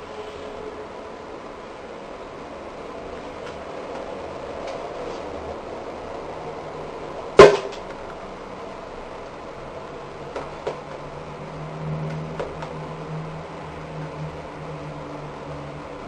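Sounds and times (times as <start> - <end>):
steady low hum: 0.0 - 16.0
sharp knock: 7.4 - 7.9.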